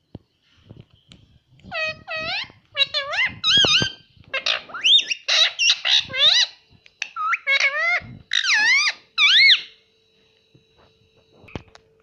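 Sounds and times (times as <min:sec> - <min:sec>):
parrot squawking: 0:01.7 - 0:09.8.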